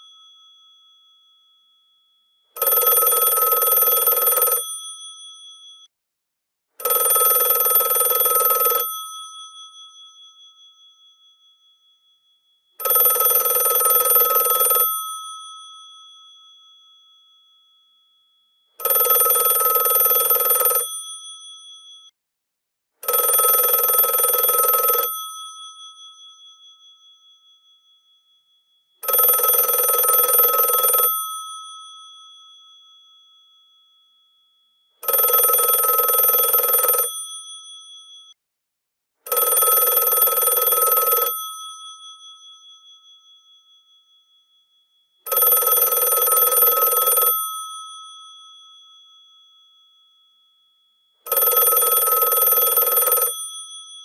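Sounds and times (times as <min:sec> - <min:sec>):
telephone bells ringing: 0:02.6 - 0:04.8, 0:06.8 - 0:09.0, 0:12.8 - 0:15.2, 0:18.8 - 0:20.9, 0:23.0 - 0:25.2, 0:29.0 - 0:31.4, 0:35.0 - 0:37.2, 0:39.3 - 0:41.5, 0:45.3 - 0:47.6, 0:51.3 - 0:53.5.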